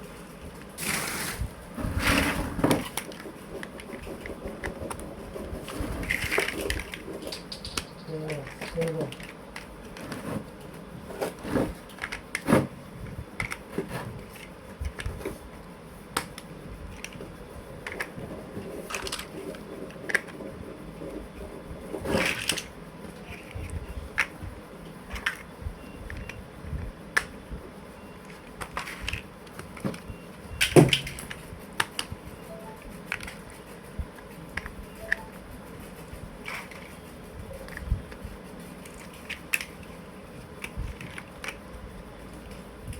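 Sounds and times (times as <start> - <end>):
plastic blocks clicking together: 6.0 - 10.1, 11.9 - 12.4, 13.4 - 13.7, 18.9 - 19.3, 38.8 - 41.7.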